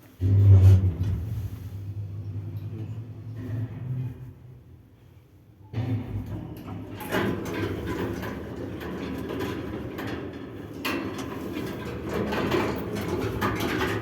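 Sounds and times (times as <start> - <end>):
elevator creaking and rattling: 0.1 - 4.8, 5.6 - 14.0.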